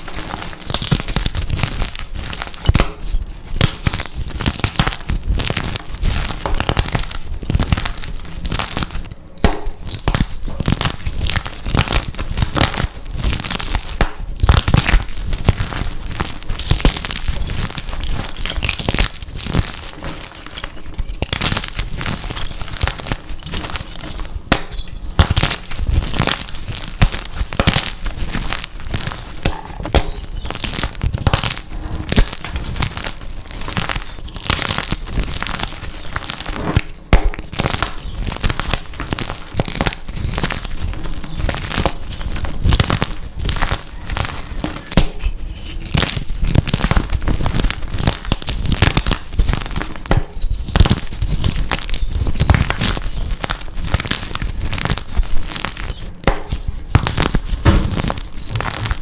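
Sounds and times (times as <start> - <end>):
chalk crushed by hand: 0.0 - 53.3, 54.1 - 59.0.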